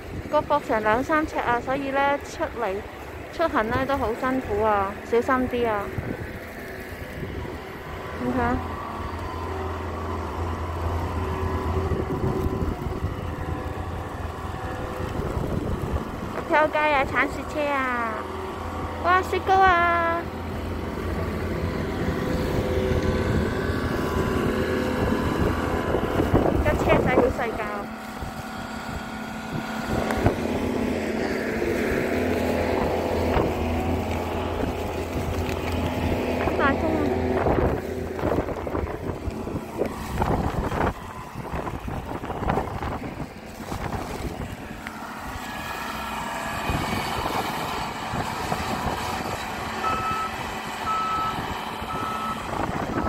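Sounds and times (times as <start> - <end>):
wind noise on microphone: 0.0 - 1.8, 3.2 - 8.7, 9.8 - 53.0
vehicle engine running: 0.0 - 53.0.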